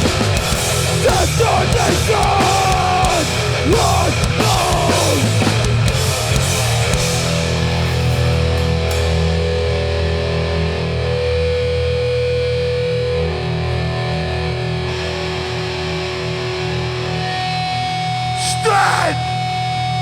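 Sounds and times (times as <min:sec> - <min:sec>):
distorted electric guitars ringing: 0:00.0 - 0:11.8.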